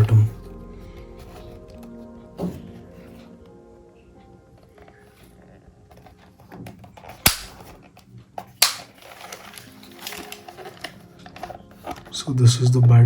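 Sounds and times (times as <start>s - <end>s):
faint background music: 0.0s - 13.0s.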